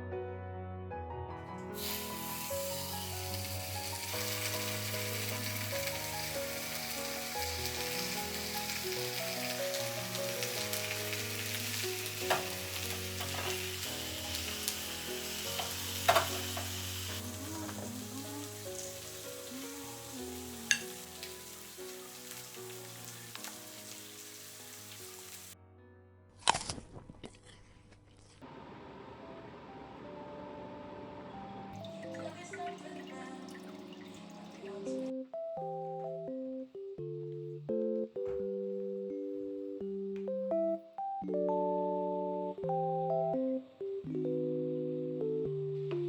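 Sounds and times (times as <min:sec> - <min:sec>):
food sizzling in a frying pan: 0:01.8 - 0:25.6.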